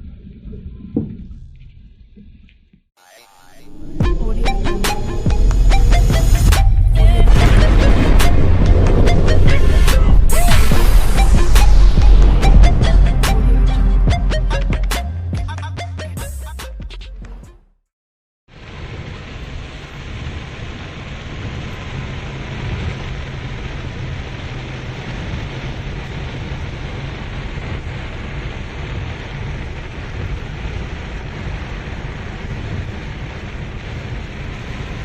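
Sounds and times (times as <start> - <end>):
heavy rain: 3.4 - 13.3, 18.5 - 35.0
vehicle driving on wet road: 18.5 - 35.0.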